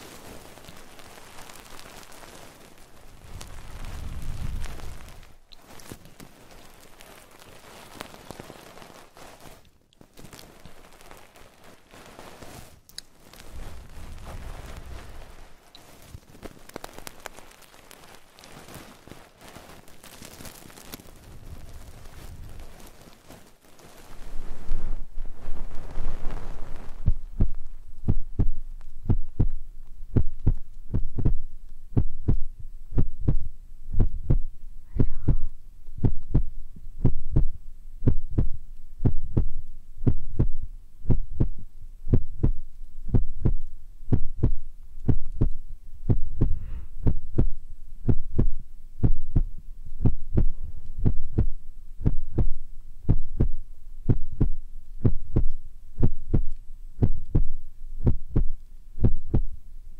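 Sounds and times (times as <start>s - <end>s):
hands rubbing microphone ears: 0.0s - 31.4s.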